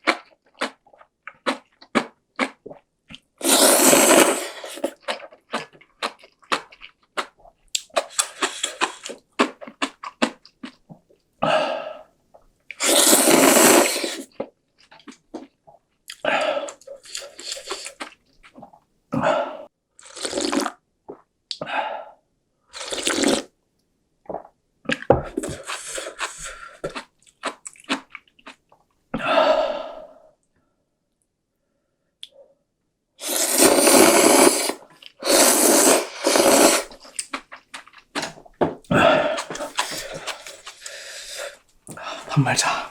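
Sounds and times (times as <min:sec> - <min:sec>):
noodles slurped: 0:00.0 - 0:10.8, 0:12.7 - 0:14.3, 0:20.0 - 0:20.8, 0:22.8 - 0:23.5, 0:25.4 - 0:28.6, 0:33.2 - 0:42.9
chewing: 0:04.8 - 0:11.2, 0:24.3 - 0:28.6, 0:36.3 - 0:41.7.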